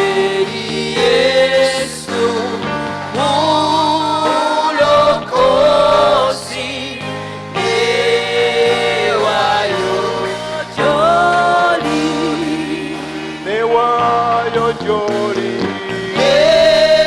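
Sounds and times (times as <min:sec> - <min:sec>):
group singing gospel song: 0:00.0 - 0:17.0
instrumental chords: 0:04.8 - 0:07.8.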